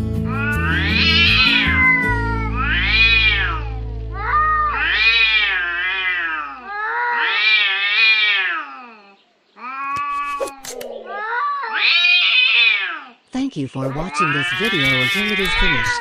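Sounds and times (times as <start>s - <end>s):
background music: 0.0s - 6.0s
cat meowing: 0.3s - 13.2s, 13.8s - 16.0s.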